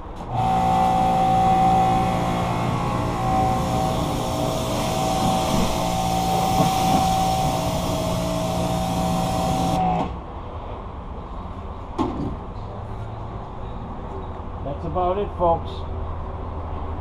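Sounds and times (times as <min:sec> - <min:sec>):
pressure washer motor whine: 0:00.2 - 0:10.0
water spray hissing: 0:03.6 - 0:09.8.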